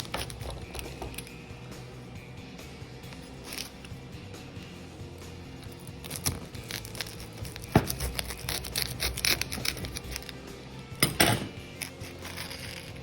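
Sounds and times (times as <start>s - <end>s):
background music: 0.0s - 13.0s
pizza cutter crunching crust: 5.7s - 10.5s, 11.7s - 13.0s.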